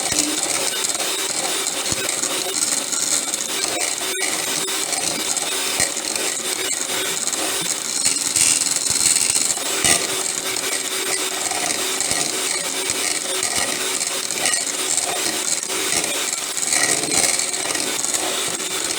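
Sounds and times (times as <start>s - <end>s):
hand mixer churning paste: 0.0s - 18.9s
beaters scraping bowl: 7.2s - 18.9s.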